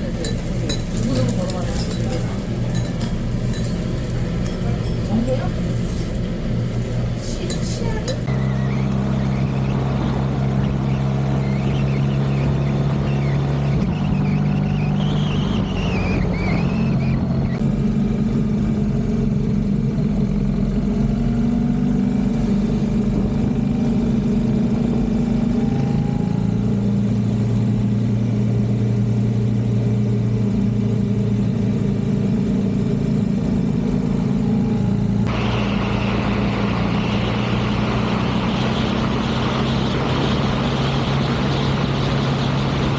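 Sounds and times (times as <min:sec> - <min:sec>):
motorcycle engine running: 0:00.0 - 0:08.7.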